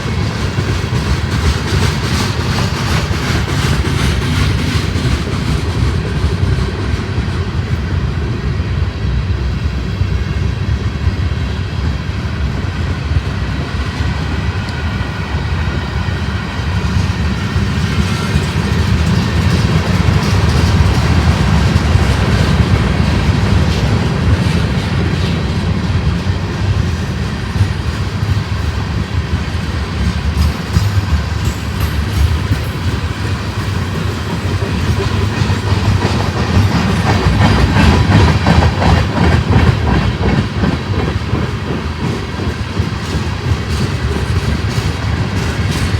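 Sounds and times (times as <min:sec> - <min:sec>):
freight train rumbling: 0:00.0 - 0:45.9
wheels clicking over track: 0:16.7 - 0:45.9.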